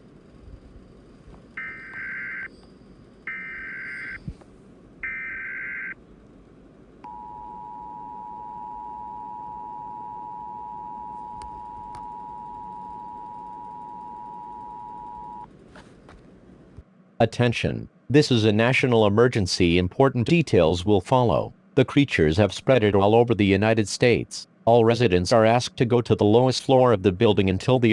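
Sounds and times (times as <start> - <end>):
data tone bursts: 1.6 - 4.3.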